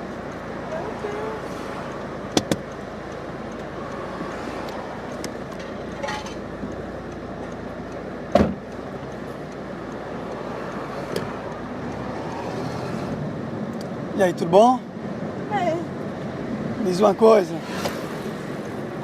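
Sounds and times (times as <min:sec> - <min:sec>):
street traffic noise: 0:00.0 - 0:19.0
sharp thump: 0:08.3 - 0:08.6.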